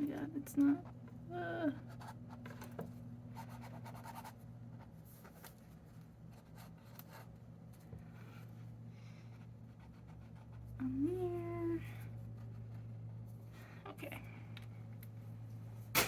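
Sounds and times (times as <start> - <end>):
steady low hum: 0.0 - 16.0
paint pen scratching on paper: 3.4 - 5.4, 9.4 - 10.6.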